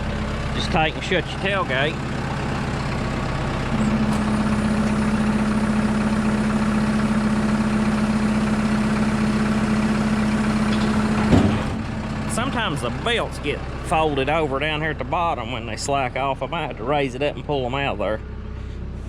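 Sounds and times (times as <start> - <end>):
tractor engine running: 0.0 - 19.0
hydraulic whine: 1.0 - 11.9.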